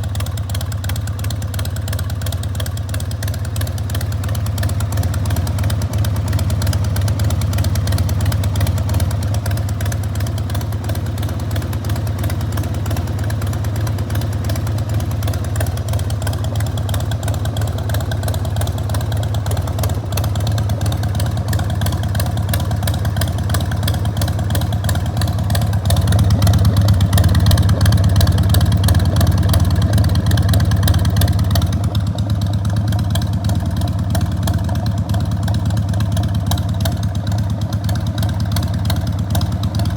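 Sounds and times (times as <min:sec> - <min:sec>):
motorcycle engine idling: 0:00.0 - 0:39.9.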